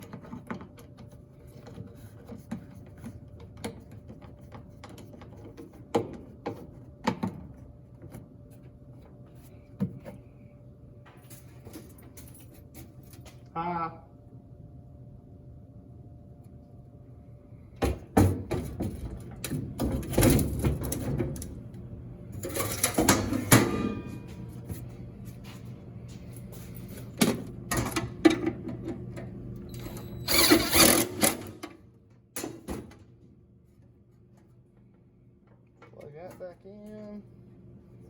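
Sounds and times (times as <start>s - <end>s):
faint steady hum: 0.0s - 18.2s
metal clanks and scraping: 22.4s - 24.4s.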